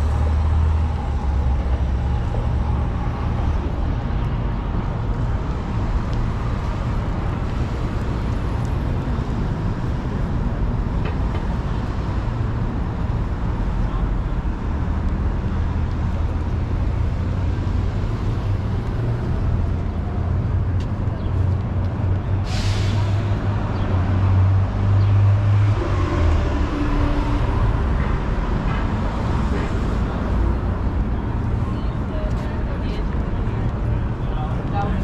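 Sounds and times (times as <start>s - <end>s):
street traffic: 0.0s - 35.0s
air brake hiss: 22.4s - 23.2s.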